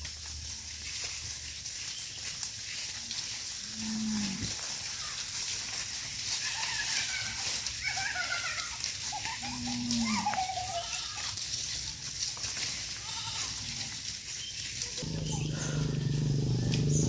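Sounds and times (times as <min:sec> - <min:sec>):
cow mooing: 0:03.7 - 0:04.5, 0:15.0 - 0:17.0.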